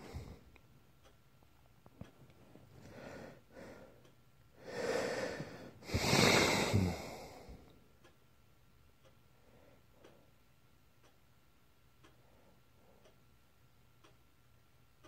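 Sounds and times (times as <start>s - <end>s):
person snoring: 5.8s - 7.4s.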